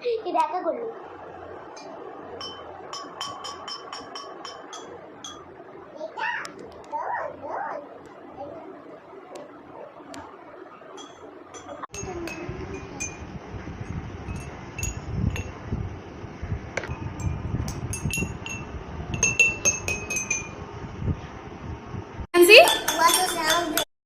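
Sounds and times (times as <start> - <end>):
water glasses clinking: 1.8 - 5.5, 11.0 - 13.2, 14.3 - 15.6, 16.8 - 20.6, 22.4 - 23.8.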